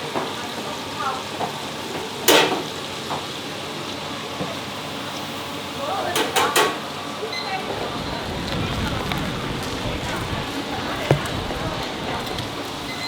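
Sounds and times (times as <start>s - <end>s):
patties sizzling in oil: 7.6s - 13.0s.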